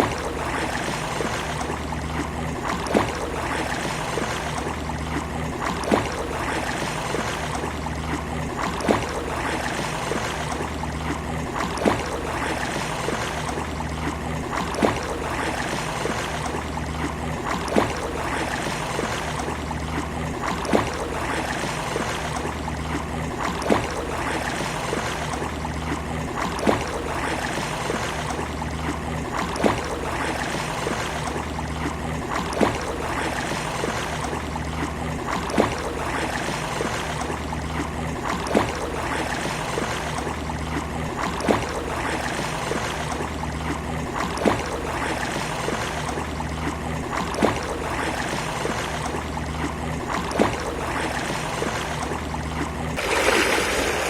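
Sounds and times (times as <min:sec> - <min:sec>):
sea waves rushing: 0:53.0 - 0:54.0.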